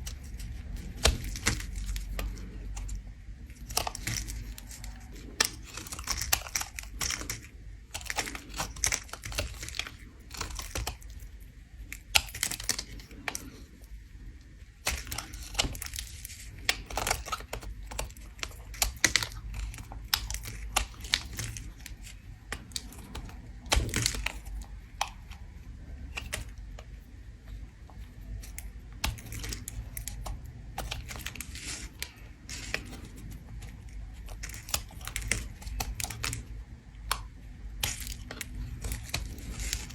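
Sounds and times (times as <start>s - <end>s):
soap being scraped: 11.8s - 39.9s.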